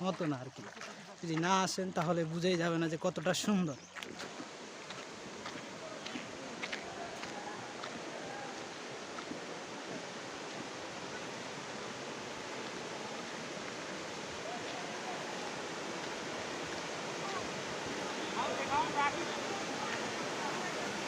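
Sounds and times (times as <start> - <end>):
waterfall rushing: 4.2 - 21.0.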